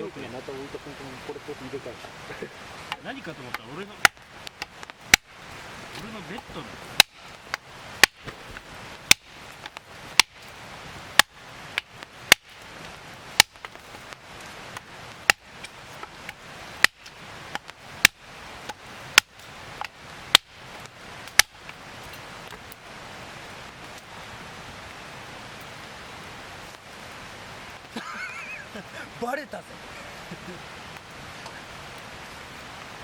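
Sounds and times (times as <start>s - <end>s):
axe chopping firewood: 2.9s - 22.8s.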